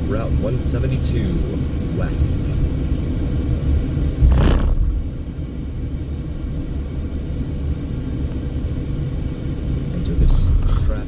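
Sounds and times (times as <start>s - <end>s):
car road and engine rumble: 0.0s - 11.0s.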